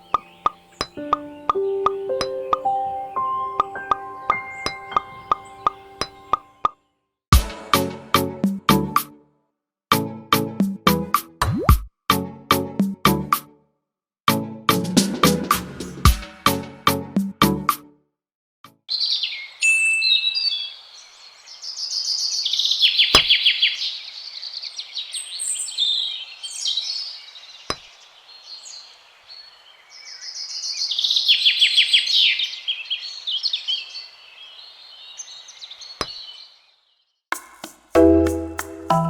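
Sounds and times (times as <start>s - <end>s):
birds chirping and singing: 0.0s - 6.8s, 18.9s - 37.0s.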